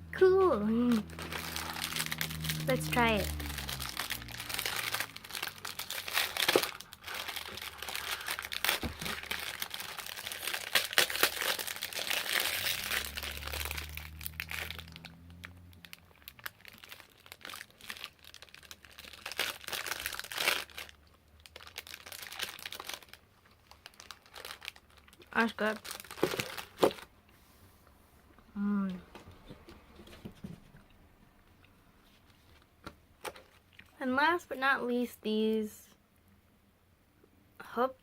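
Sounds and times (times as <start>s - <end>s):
plastic wrapper crinkling: 0.4s - 27.1s, 32.2s - 34.0s.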